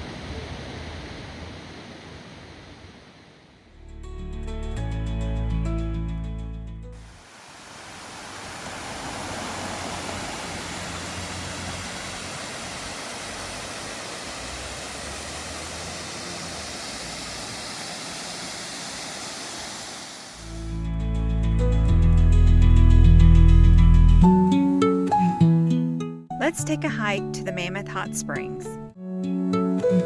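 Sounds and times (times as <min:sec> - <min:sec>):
waterfall rushing: 0:07.0 - 0:20.7
background music: 0:20.6 - 0:30.0.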